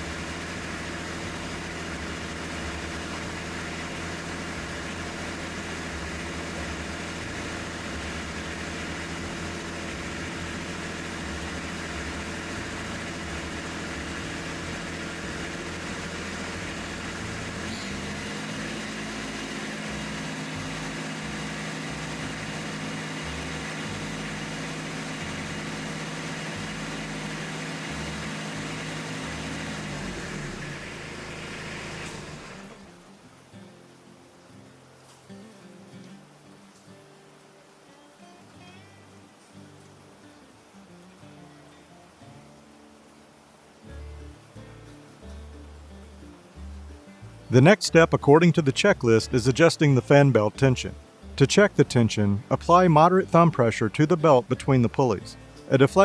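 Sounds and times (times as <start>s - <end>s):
tractor diesel engine running: 0.0s - 33.4s, 46.6s - 56.0s.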